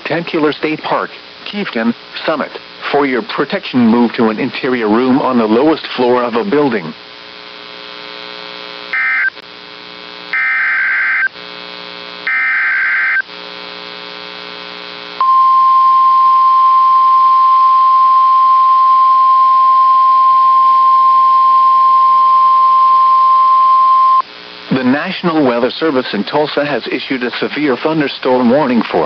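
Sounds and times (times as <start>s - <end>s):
digital data tone bursts: 8.9s - 9.4s, 10.3s - 11.3s, 12.2s - 13.2s
low steady hum: 13.2s - 27.7s.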